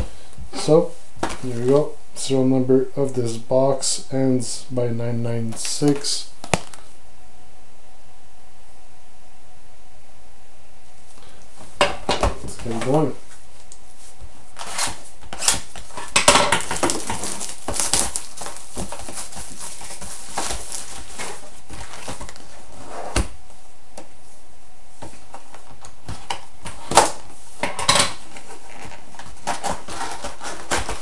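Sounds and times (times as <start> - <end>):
packaging crinkling and tearing: 14.6 - 22.6, 28.3 - 31.0.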